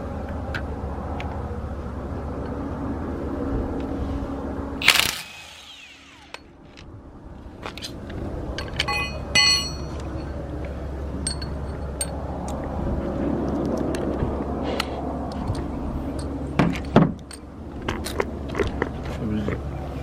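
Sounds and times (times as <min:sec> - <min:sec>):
steady low rumble: 0:00.0 - 0:20.0
metal tools clinking: 0:08.6 - 0:10.4, 0:11.2 - 0:12.2
ringing metallic clanks: 0:08.6 - 0:10.4, 0:11.2 - 0:12.2.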